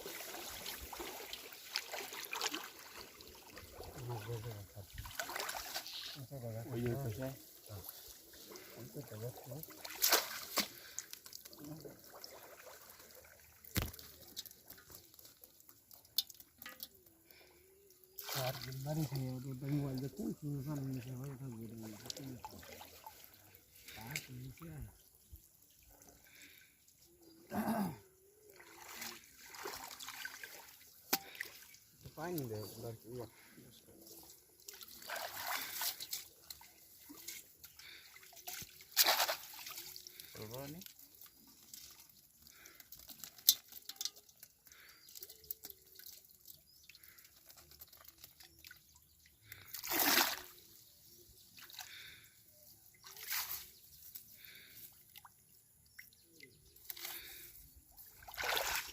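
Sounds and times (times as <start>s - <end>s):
sharp water splashes: 0.0s - 14.9s, 18.2s - 20.1s, 28.6s - 32.5s, 34.6s - 40.9s, 49.5s - 50.6s, 58.1s - 58.9s
water dripping and trickling: 0.0s - 58.9s.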